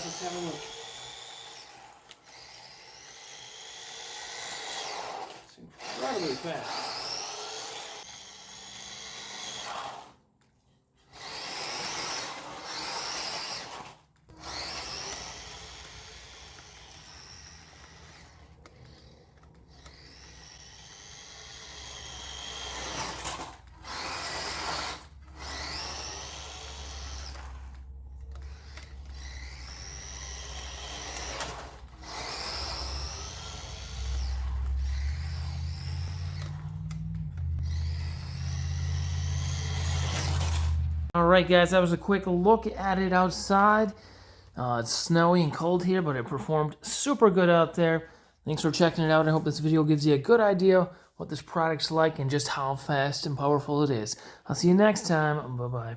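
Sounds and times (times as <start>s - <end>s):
toy truck electric motor whining: 0.0s - 45.2s.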